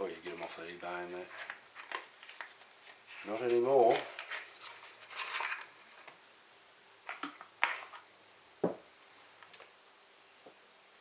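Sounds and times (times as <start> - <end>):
rustle: 1.2 - 6.2.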